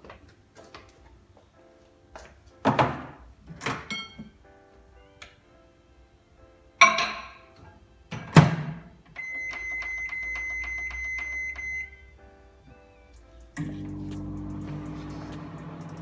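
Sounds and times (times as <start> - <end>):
faint background music: 0.0 - 16.0
cookware clattering: 2.7 - 4.3, 6.8 - 7.5
kitchen appliance whine and ticking: 13.5 - 16.0.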